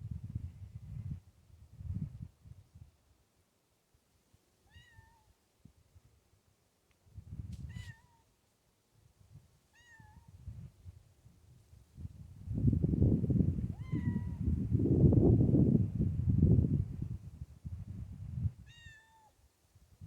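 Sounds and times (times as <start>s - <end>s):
cat meowing: 4.7s - 5.3s, 7.7s - 8.3s, 9.7s - 10.3s, 13.8s - 14.4s, 18.6s - 19.4s.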